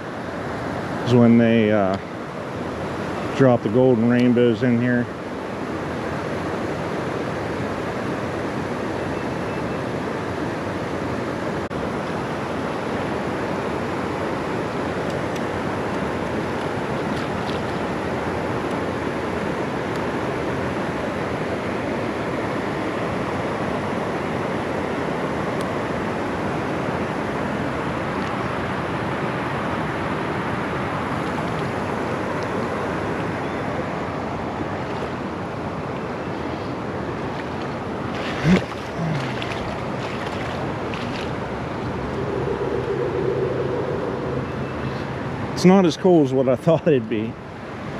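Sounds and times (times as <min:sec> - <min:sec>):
water rushing: 0:35.0 - 0:46.8.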